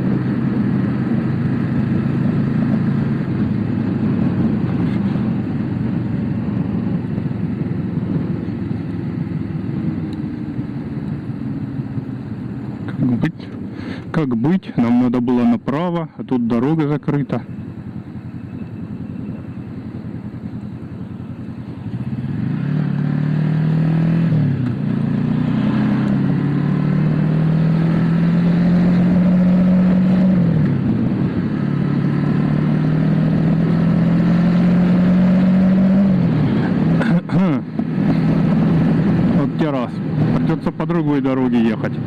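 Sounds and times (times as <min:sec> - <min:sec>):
motorcycle engine accelerating: 0:00.0 - 0:14.1, 0:16.7 - 0:42.0.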